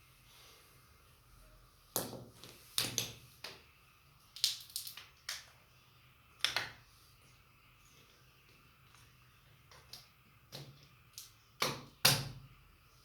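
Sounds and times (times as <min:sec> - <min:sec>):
small hard objects clicking: 0:04.4 - 0:05.4.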